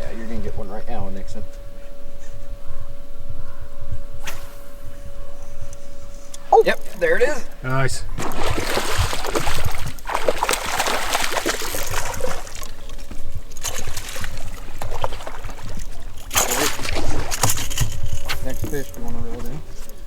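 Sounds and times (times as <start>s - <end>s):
water splashing and sloshing: 8.2s - 19.1s.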